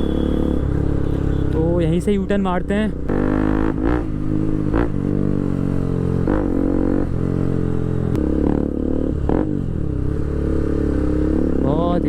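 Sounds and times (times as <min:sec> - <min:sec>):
motorcycle engine running: 0:00.0 - 0:12.0.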